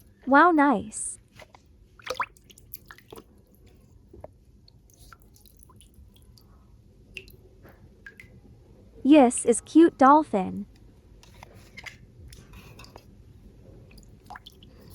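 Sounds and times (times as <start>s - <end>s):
water dripping: 2.0s - 3.2s, 7.1s - 7.4s, 8.0s - 8.4s, 14.0s - 14.9s
wet squishing: 2.0s - 3.7s, 14.0s - 14.9s.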